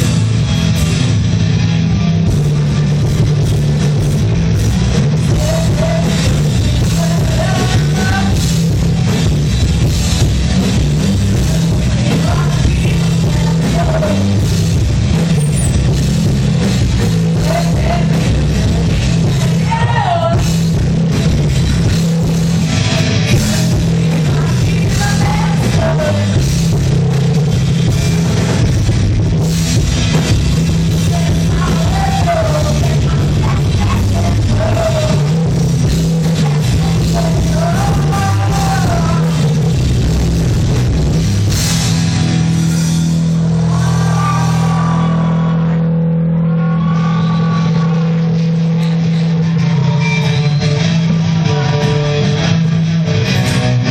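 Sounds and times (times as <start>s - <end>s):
rock band playing: 0.0s - 53.9s
person singing: 5.2s - 8.5s, 11.3s - 14.4s, 17.4s - 20.5s, 23.3s - 26.4s, 31.0s - 39.6s.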